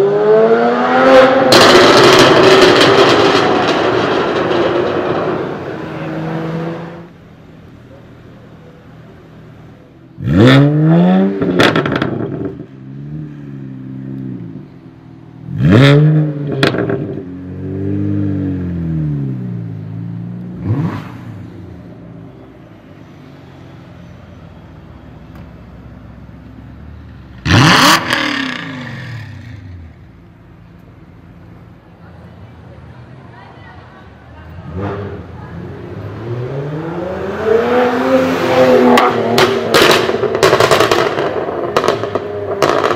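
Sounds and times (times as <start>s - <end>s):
car engine revving hard: 0.0s - 7.1s, 10.2s - 12.6s, 15.5s - 18.8s, 20.6s - 21.4s, 27.4s - 29.5s, 34.6s - 42.9s
exhaust backfires and crackles: 1.2s - 21.8s, 24.5s - 31.8s, 34.5s - 42.9s
loud bang: 1.4s - 5.8s.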